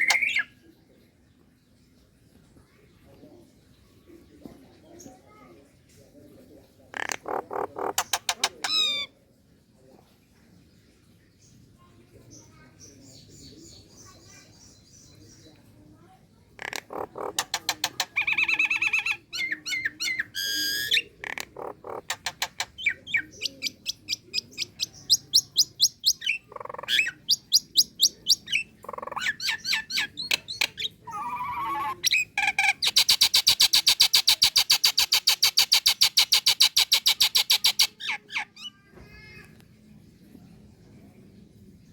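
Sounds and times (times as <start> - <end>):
bird calling with clicks and whistles: 0.0 - 0.5, 25.6 - 38.0
fast even bird rattle: 32.8 - 37.8.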